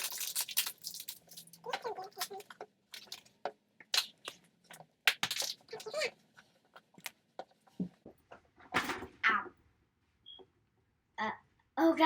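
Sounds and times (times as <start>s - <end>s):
plastic packaging crinkling: 0.0s - 3.3s, 5.1s - 6.1s
wrapper tearing: 0.0s - 3.3s, 5.1s - 6.0s.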